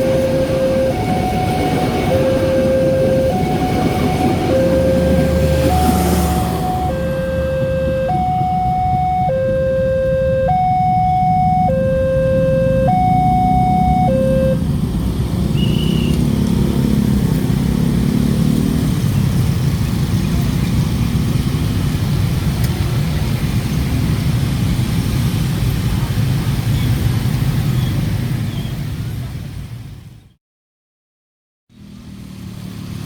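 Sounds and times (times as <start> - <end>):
level crossing two-tone siren: 0.0 - 14.6.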